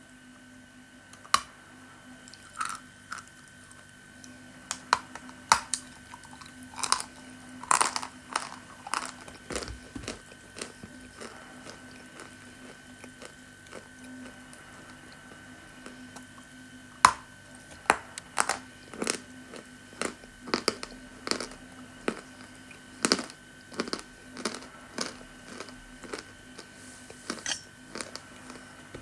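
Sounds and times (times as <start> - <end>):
crunchy chewing: 2.2 - 29.0.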